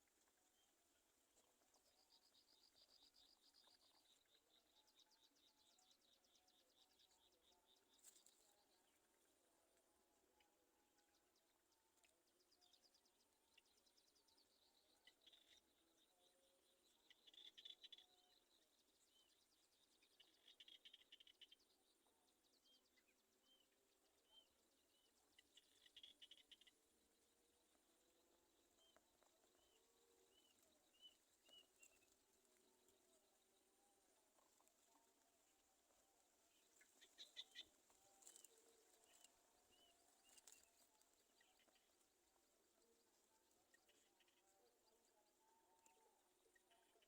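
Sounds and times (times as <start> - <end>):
faint high bird chirps: 36.5 - 42.0.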